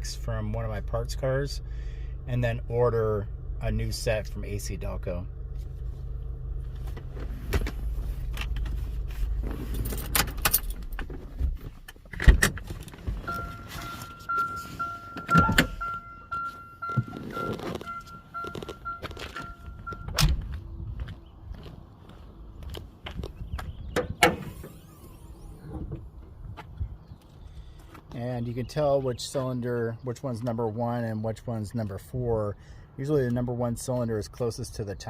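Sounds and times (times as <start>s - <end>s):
car engine idling: 0.0s - 11.1s, 12.9s - 29.1s.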